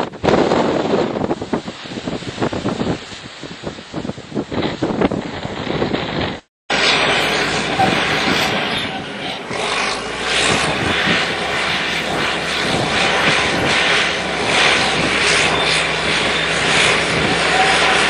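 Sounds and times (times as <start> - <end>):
wind buffeting: 0.0 - 18.0
large engine droning: 6.7 - 18.0.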